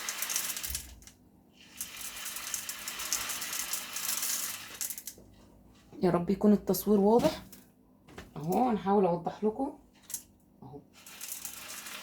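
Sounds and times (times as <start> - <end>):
salt grains pouring through funnel: 0.0 - 0.9, 1.6 - 5.1, 10.9 - 12.0.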